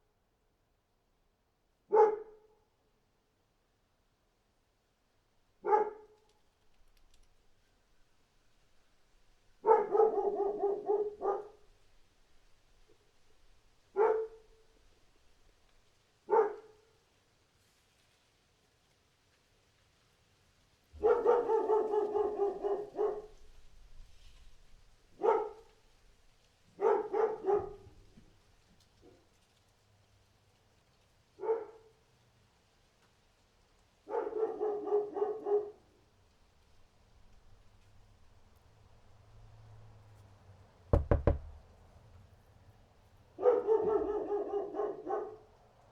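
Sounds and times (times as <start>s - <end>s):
dog barking: 1.9s - 2.6s, 5.6s - 6.2s, 9.6s - 11.7s, 13.9s - 14.7s, 16.3s - 17.0s, 21.0s - 23.5s, 25.2s - 25.8s, 26.8s - 28.0s, 31.4s - 32.0s, 34.0s - 35.9s, 43.4s - 45.5s.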